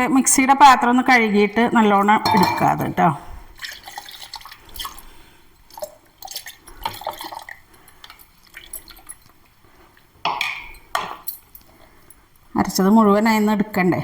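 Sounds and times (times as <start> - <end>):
jar clinking and clattering: 2.2 - 2.8
water splashing and dripping: 3.6 - 10.1.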